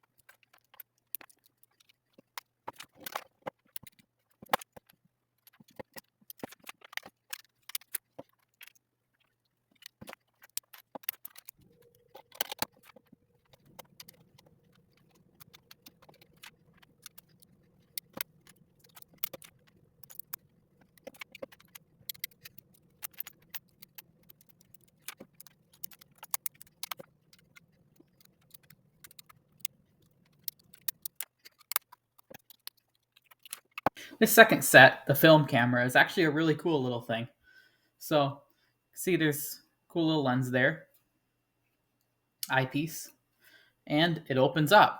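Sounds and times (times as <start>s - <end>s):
plastic bricks clicking and clattering: 0.0s - 34.0s.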